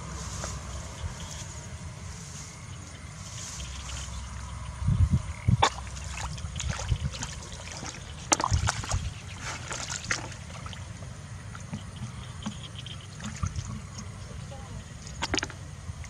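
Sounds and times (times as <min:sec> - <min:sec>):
steady low rumble: 0:00.0 - 0:16.0
water splashing and trickling: 0:05.5 - 0:16.0.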